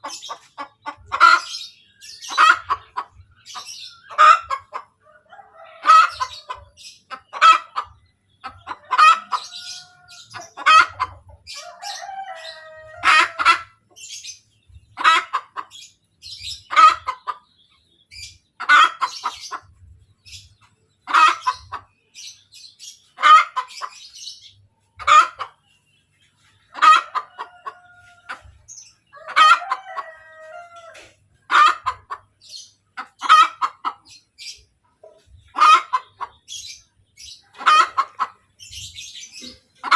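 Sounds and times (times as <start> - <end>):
hen cackling: 0.0 - 14.1, 14.9 - 15.8, 16.5 - 17.4, 18.6 - 19.7, 21.1 - 21.9, 23.2 - 24.3, 25.0 - 25.6, 26.7 - 34.2, 35.1 - 36.8, 37.5 - 38.4.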